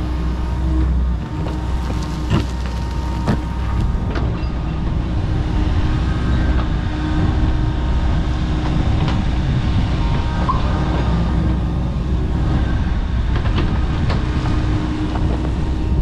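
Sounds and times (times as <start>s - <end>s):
excavator diesel engine running: 0.0s - 16.0s
sharp cracks and knocks: 1.2s - 3.9s.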